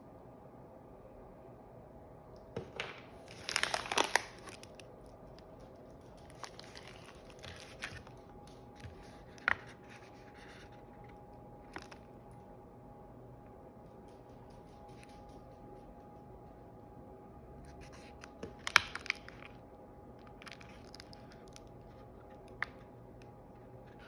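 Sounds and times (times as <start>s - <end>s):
packaging crinkling and tearing: 2.8s - 12.1s, 17.8s - 19.6s, 20.2s - 22.9s.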